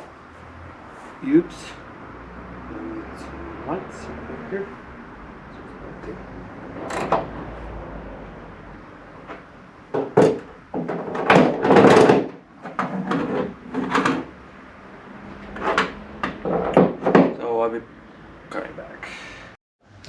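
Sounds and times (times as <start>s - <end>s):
panels knocking and banging: 9.3s - 14.3s, 15.6s - 17.4s.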